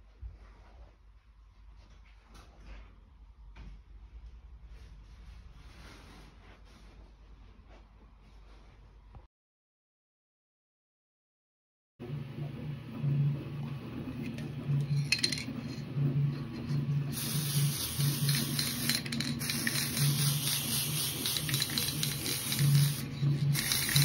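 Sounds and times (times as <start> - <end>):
aerosol spray can hissing: 17.1 - 24.0.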